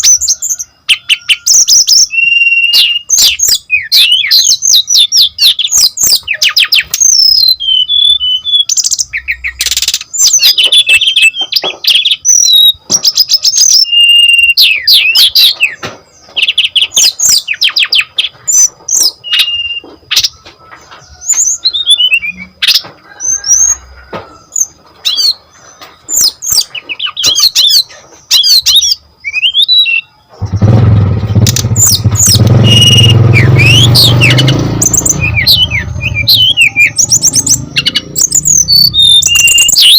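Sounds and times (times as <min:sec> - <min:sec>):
bird singing whistles and trills: 0:00.0 - 0:30.7, 0:31.4 - 0:39.9
loud low rumbling: 0:30.3 - 0:39.6.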